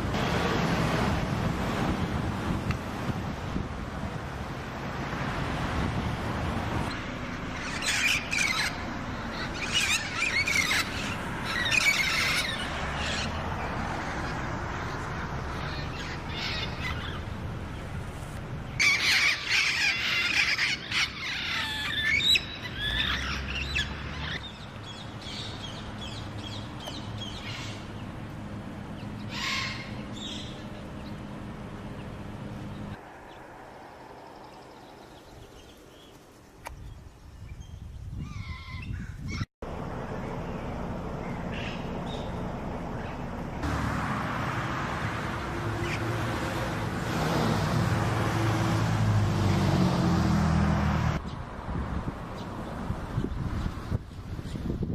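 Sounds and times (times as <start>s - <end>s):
parrots squawking: 7.5s - 13.4s, 15.5s - 17.3s, 18.8s - 24.4s, 29.2s - 30.6s.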